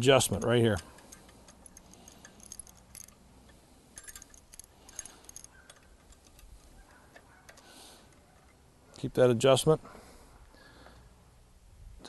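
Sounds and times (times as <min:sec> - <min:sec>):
faint metallic clicks and clinks: 0:00.0 - 0:08.7.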